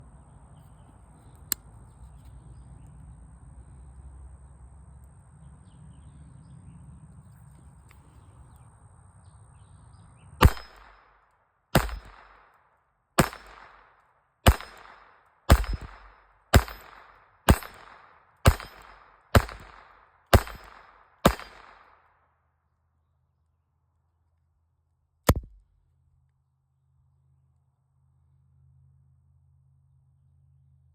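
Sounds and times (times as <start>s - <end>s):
pistol shots: 10.4s - 12.6s, 13.2s - 22.0s.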